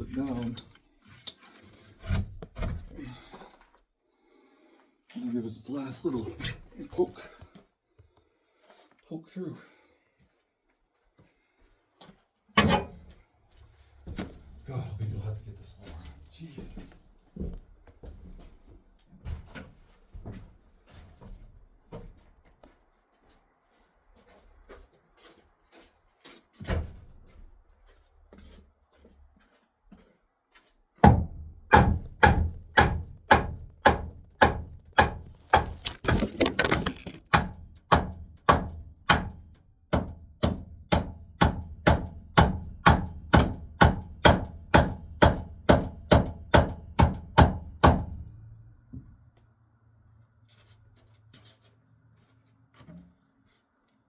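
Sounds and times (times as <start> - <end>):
hammering on wood: 31.0 - 35.9, 37.0 - 48.2.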